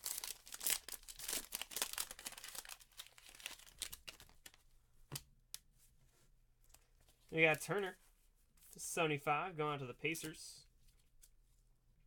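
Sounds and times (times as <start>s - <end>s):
plastic wrapping crinkling and tearing: 0.0s - 4.6s.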